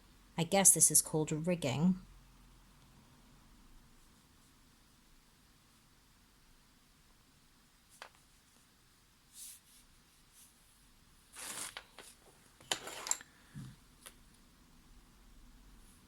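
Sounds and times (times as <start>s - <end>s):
rustling and scraping of materials: 9.3s - 14.2s.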